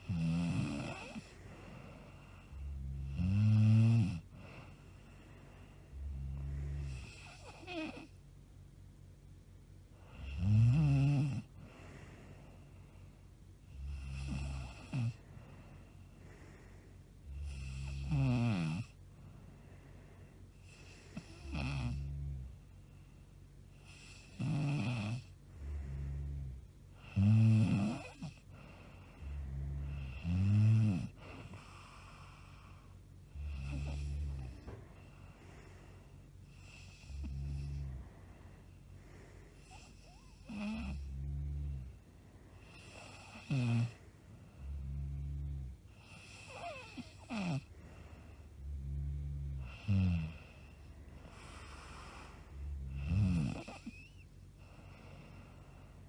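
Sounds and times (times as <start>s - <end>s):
woman snoring heavily: 0.0s - 4.9s, 5.9s - 8.1s, 10.1s - 12.1s, 13.7s - 15.2s, 17.3s - 19.0s, 20.6s - 22.5s, 23.8s - 34.8s, 36.5s - 38.2s, 39.0s - 44.0s, 44.6s - 56.0s.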